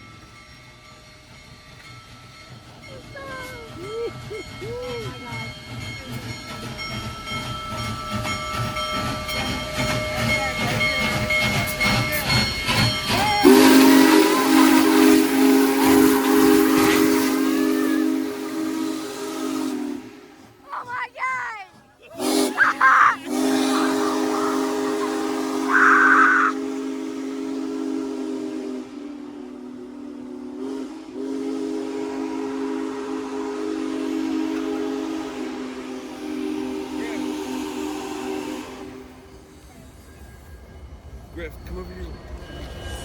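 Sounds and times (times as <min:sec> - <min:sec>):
steam locomotive exhaust chuffs: 0:00.0 - 0:21.1, 0:21.7 - 0:43.0
deep steam whistle: 0:13.0 - 0:20.6, 0:22.1 - 0:39.6
hiss of steam: 0:22.2 - 0:43.0.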